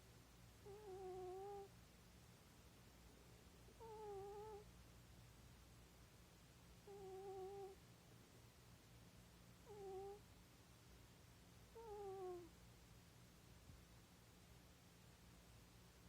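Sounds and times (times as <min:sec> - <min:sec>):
faint steady low hum: 0:00.0 - 0:16.0
cat snoring: 0:00.6 - 0:01.7, 0:03.8 - 0:04.6, 0:06.8 - 0:07.8, 0:09.6 - 0:10.2, 0:11.8 - 0:12.5.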